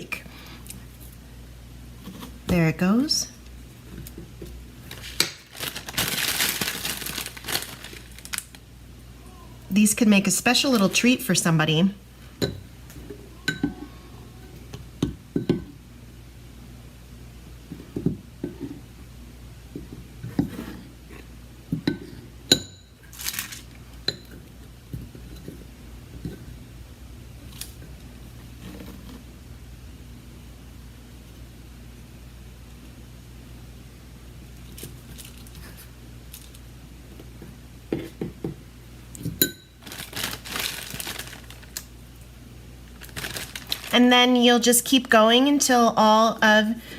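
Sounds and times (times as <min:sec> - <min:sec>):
rustling: 0:04.8 - 0:08.6, 0:23.0 - 0:23.8, 0:39.8 - 0:41.9, 0:42.9 - 0:44.0.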